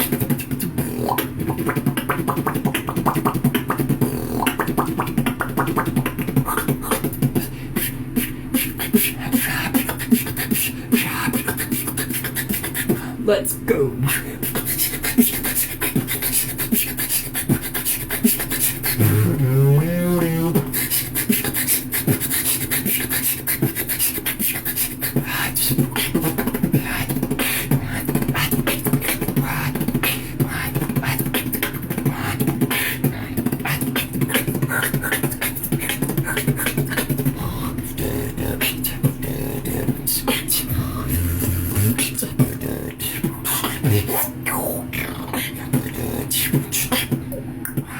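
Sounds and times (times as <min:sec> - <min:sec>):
wobbling vocal glide: 0:00.0 - 0:10.7, 0:17.4 - 0:21.6, 0:24.3 - 0:47.8
beatboxing percussive hits: 0:00.0 - 0:13.1, 0:14.0 - 0:47.9
steady low tone: 0:37.3 - 0:43.1.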